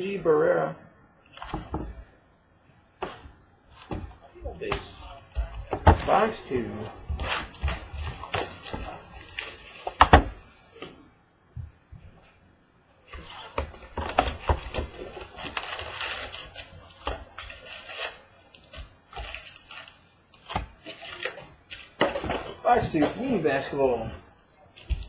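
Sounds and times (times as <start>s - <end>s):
packaging crinkling and rustling: 3.1s - 10.9s, 13.1s - 23.8s.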